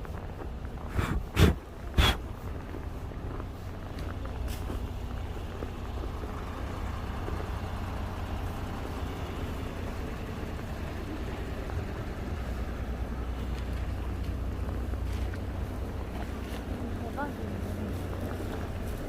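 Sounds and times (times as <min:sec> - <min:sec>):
city street traffic rumble: 0:00.0 - 0:19.0.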